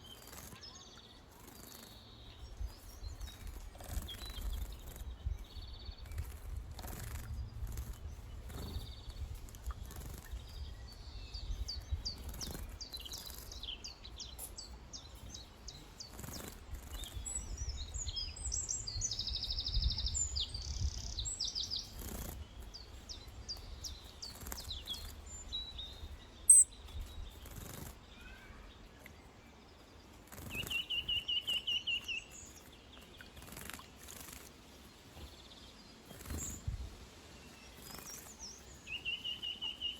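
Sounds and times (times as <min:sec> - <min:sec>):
birds splashing and fluttering: 0:00.0 - 0:19.3, 0:20.9 - 0:39.9
small birds chirping: 0:00.0 - 0:39.9
low wind rumble: 0:02.4 - 0:15.6, 0:16.6 - 0:27.4
bird trill: 0:23.5 - 0:28.7.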